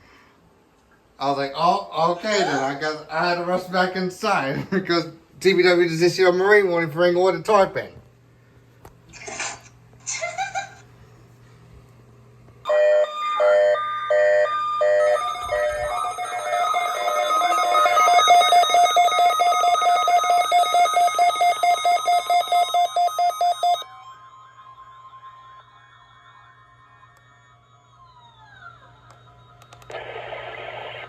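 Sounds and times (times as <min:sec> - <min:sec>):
pulsing two-tone alarm: 0:12.7 - 0:31.0.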